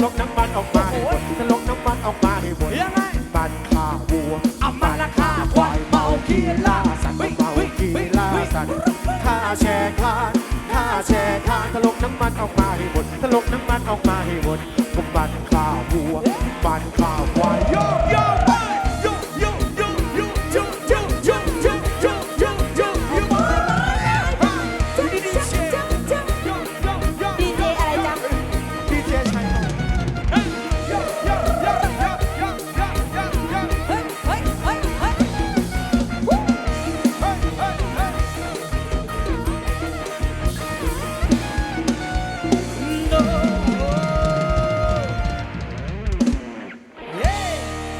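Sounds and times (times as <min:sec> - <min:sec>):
bending lead melody: 0:00.0 - 0:47.9
drum kit beat: 0:00.0 - 0:47.9
live band music over loudspeakers: 0:00.0 - 0:47.9.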